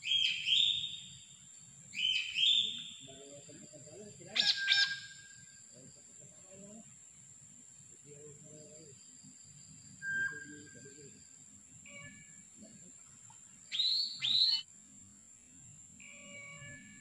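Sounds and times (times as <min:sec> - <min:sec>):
birds calling: 0:04.2 - 0:05.5, 0:13.6 - 0:14.6.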